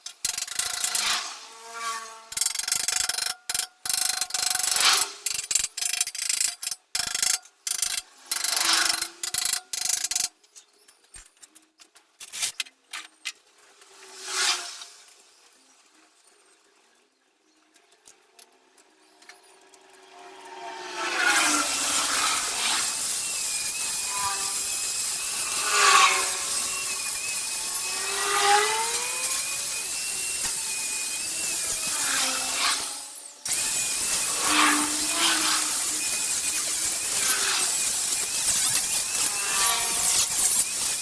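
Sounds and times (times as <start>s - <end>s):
power tool grinding: 0.2s - 10.3s, 18.6s - 41.0s.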